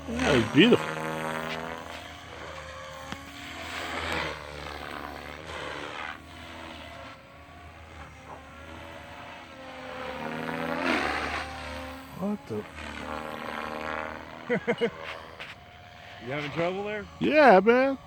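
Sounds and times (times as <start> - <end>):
rc helicopter rotor and motor whirring: 0.0 - 18.0.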